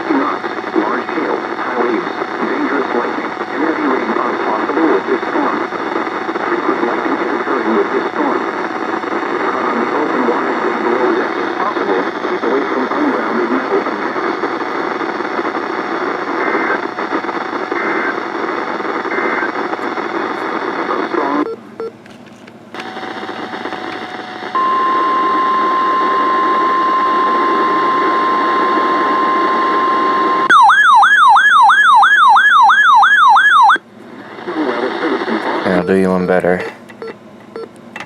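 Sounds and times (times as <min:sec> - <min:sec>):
radio static hiss: 0:00.0 - 0:21.5, 0:22.8 - 0:30.5, 0:33.5 - 0:37.0
steady alarm tone: 0:22.9 - 0:33.8
warbling alarm tone: 0:24.5 - 0:33.8.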